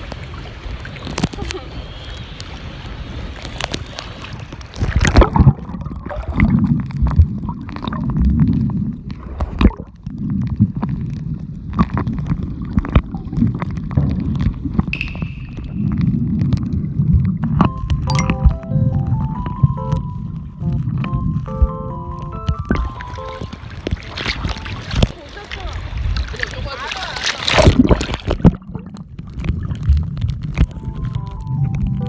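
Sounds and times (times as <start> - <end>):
muffled water gurgling and sloshing: 0.0 - 32.0
loud splash: 22.8 - 28.6.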